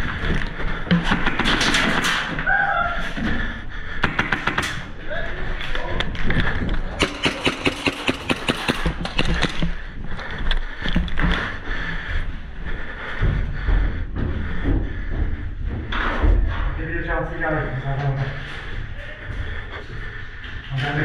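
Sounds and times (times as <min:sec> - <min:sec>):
airsoft guns firing rapidly: 0:01.1 - 0:02.4, 0:04.0 - 0:05.0, 0:06.9 - 0:09.7.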